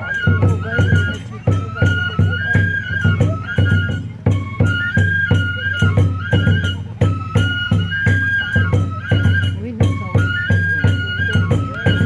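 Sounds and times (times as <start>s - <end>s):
bamboo flute melody: 0.0s - 12.0s
hand cymbal strikes: 0.0s - 12.0s
taiko drum beats: 0.0s - 12.0s.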